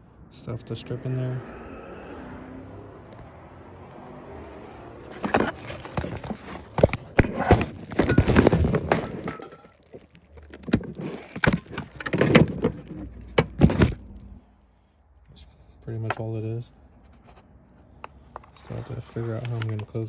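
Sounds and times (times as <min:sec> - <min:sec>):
handling clicks and knocks: 0:05.0 - 0:14.2.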